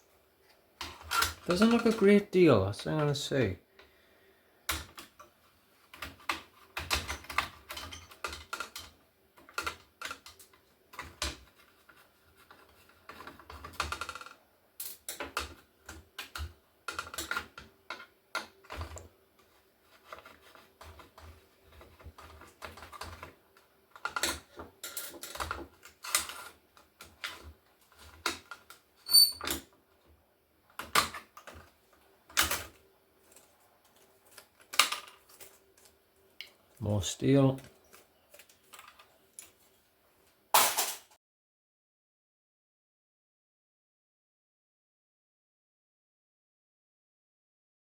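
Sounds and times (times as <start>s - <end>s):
small laptop parts clicking and rattling: 4.7s - 29.7s, 30.7s - 36.8s, 37.6s - 39.7s.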